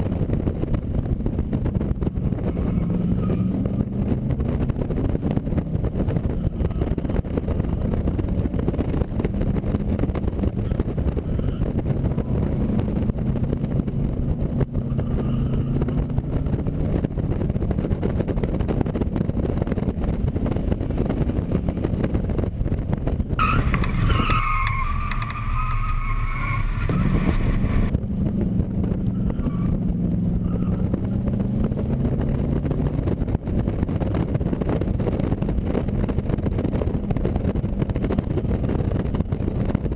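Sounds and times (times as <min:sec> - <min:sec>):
race car engine: 0:00.0 - 0:39.9
wind rush: 0:00.0 - 0:39.9
high wavering squealing: 0:23.4 - 0:27.9.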